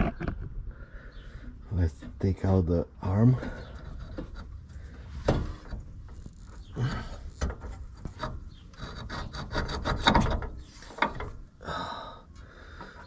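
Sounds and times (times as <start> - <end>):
metal parts clunking and scraping: 3.3 - 11.6.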